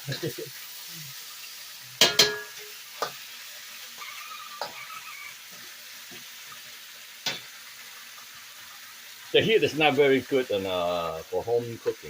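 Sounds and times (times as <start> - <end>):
food sizzling in a pan: 0.0 - 12.0
metal utensil knocking on pan: 2.0 - 3.2.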